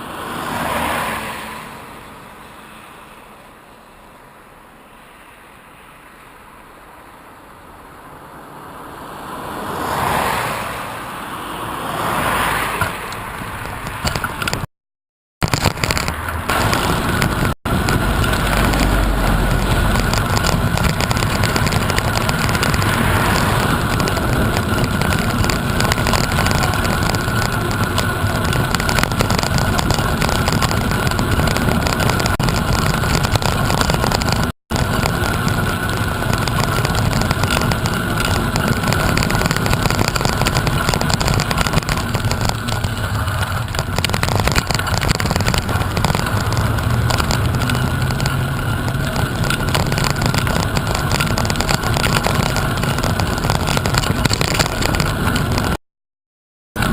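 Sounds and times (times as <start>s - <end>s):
wind rushing over microphone: 15.4s - 55.8s.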